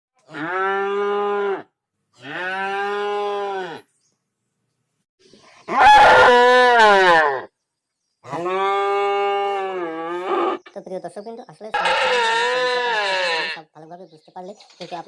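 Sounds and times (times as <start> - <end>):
cow mooing: 0.3 - 3.9, 5.7 - 7.5, 8.3 - 10.6, 11.8 - 13.6.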